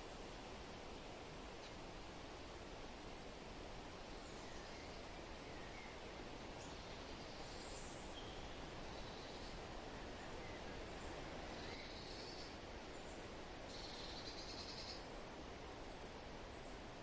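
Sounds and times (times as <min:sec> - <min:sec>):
faint high bird chirps: 0:06.6 - 0:09.6, 0:10.3 - 0:15.1.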